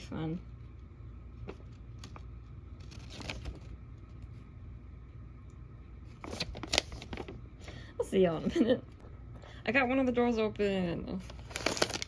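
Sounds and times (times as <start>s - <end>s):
cardboard and plastic rustling: 1.4s - 4.2s, 6.1s - 7.4s, 11.2s - 12.0s.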